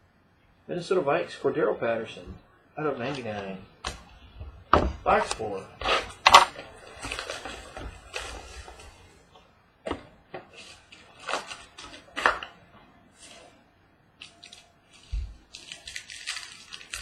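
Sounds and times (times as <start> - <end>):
packaging rustling: 3.0 - 9.3, 9.9 - 12.6, 14.2 - 17.0.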